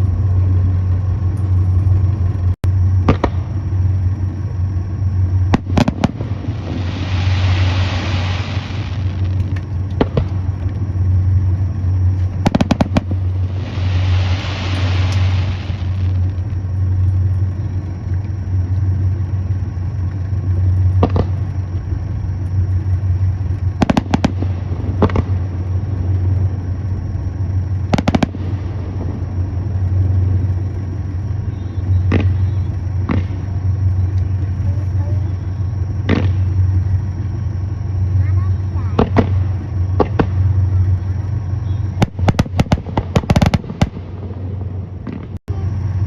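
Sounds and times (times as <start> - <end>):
low rumble: 0.0 - 46.0
fireworks bangs: 3.0 - 4.0, 5.4 - 10.9, 12.0 - 17.0, 20.8 - 21.6, 23.7 - 26.6, 27.6 - 35.4, 36.0 - 36.9, 38.1 - 45.6.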